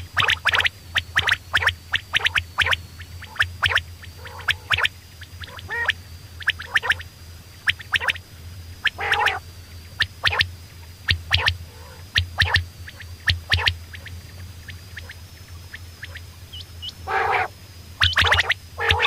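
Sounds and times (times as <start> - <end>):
faint high whine: 0.0 - 19.0
low hum: 0.0 - 19.0
quail calling: 1.2 - 7.0, 8.9 - 9.4, 11.3 - 12.6, 16.0 - 19.0.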